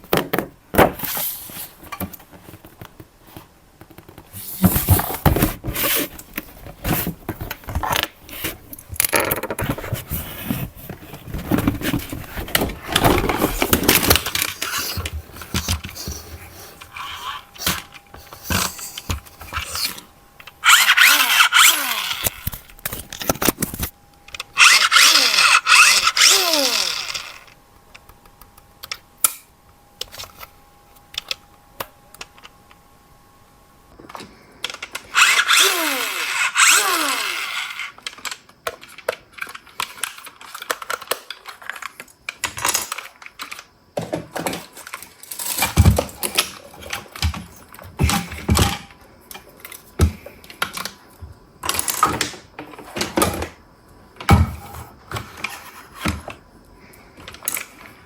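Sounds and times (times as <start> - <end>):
loud rasping burst: 20.6 - 22.5, 24.6 - 27.5, 35.1 - 38.0.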